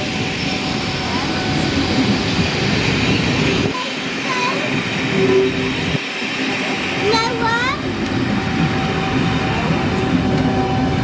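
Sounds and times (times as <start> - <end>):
train wheels on rail: 0.0 - 11.0.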